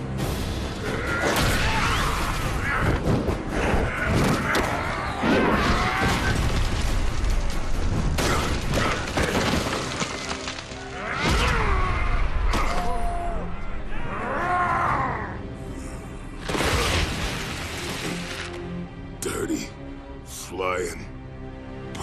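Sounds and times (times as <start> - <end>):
dramatic music score: 0.0 - 22.0
crashes and thuds: 5.5 - 11.6.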